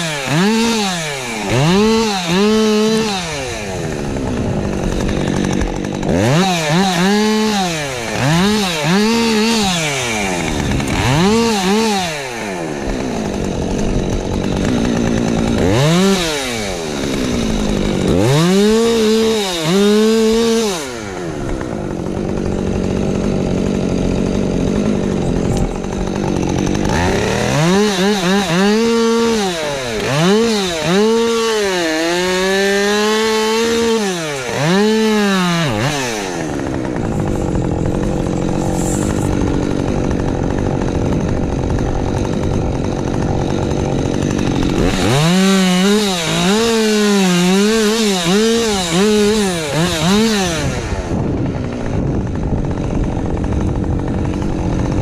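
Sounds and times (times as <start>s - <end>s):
chainsaw cutting through wood: 0.0s - 55.0s
chainsaw revving: 0.0s - 55.0s.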